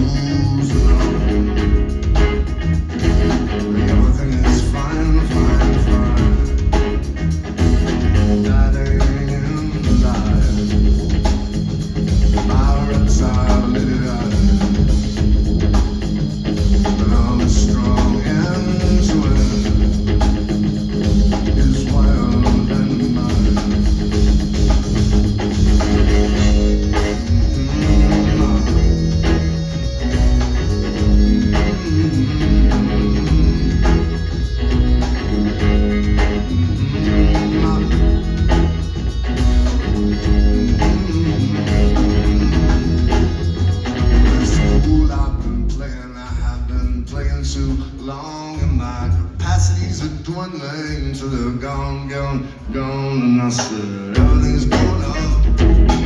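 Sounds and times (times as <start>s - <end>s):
live rock band playing: 0.0s - 46.7s, 52.6s - 56.0s.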